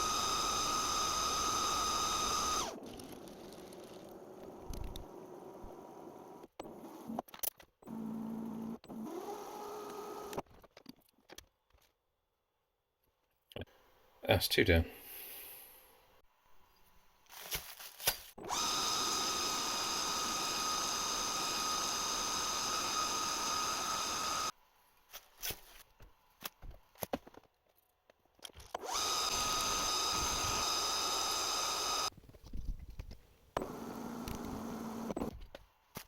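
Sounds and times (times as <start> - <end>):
metal lathe whining: 0.0 - 4.0, 18.4 - 24.5, 28.8 - 32.1.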